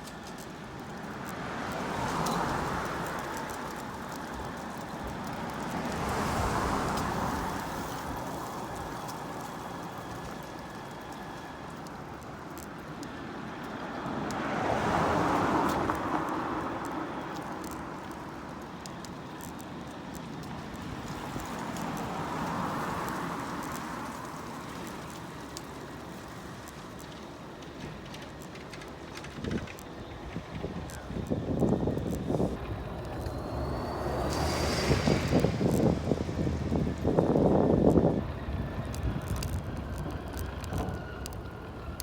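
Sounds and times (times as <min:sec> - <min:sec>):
vehicles passing by: 0:00.0 - 0:42.0
wind rumble on microphone: 0:29.2 - 0:42.0.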